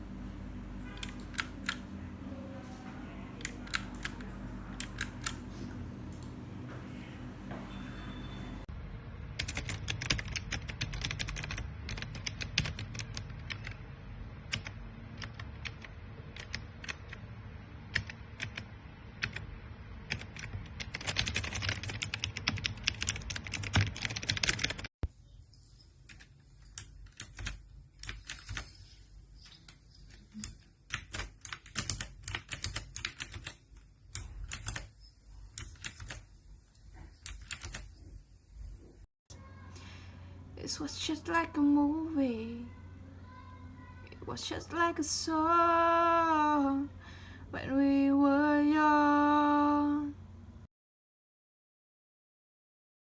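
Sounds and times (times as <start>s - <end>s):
background hum: 0.0s - 50.7s
mechanical keyboard clicking: 3.4s - 4.2s, 4.8s - 5.4s, 9.4s - 13.8s, 14.5s - 17.2s, 17.9s - 19.4s, 20.1s - 24.9s, 26.1s - 28.6s, 30.3s - 34.9s, 35.6s - 36.2s, 37.2s - 37.8s.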